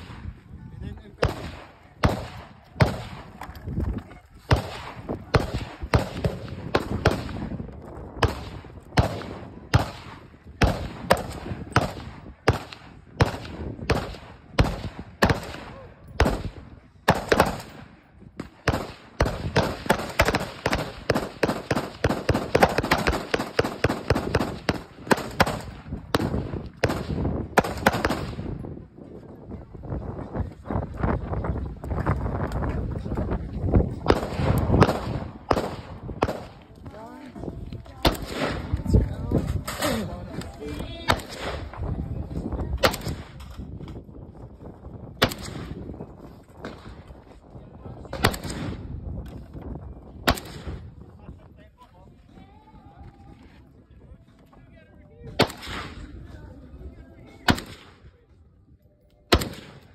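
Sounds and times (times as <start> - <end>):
gunshots: 0.0 - 0.4, 1.2 - 3.5, 4.4 - 7.6, 8.2 - 28.6, 34.0 - 36.7, 38.0 - 38.9, 41.0 - 41.8, 42.8 - 43.5, 45.2 - 45.8, 48.1 - 48.9, 50.2 - 50.8, 55.4 - 56.0, 57.4 - 58.0, 59.3 - 59.9.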